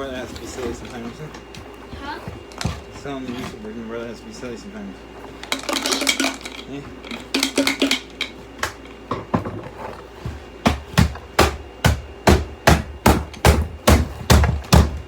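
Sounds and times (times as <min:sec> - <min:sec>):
hard knocks with deep thud: 0:10.6 - 0:15.0.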